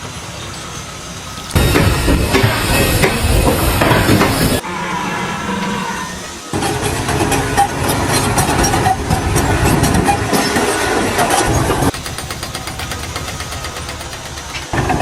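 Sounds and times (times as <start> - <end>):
steady engine sound: 1.0 - 15.0
machine engine clattering: 1.5 - 4.6, 6.5 - 15.0.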